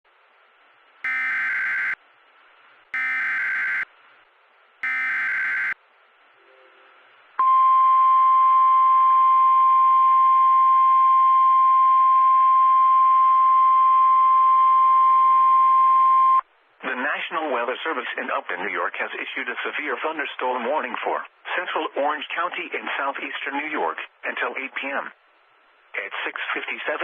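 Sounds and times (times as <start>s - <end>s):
steady warning alarm tone: 1.0s - 2.0s, 3.0s - 3.9s, 4.8s - 5.8s
digital data bursts: 1.1s - 2.0s, 3.0s - 3.8s, 4.8s - 5.8s.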